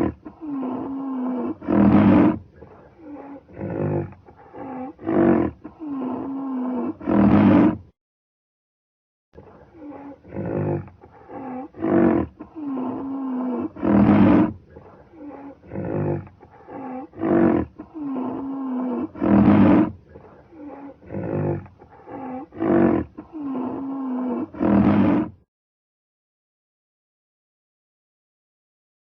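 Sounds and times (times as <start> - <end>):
rhinoceros calling: 9.4 - 25.3.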